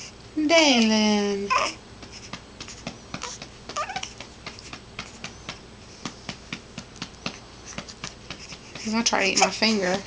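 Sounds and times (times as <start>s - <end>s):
hand patting baby's back: 2.0s - 10.0s.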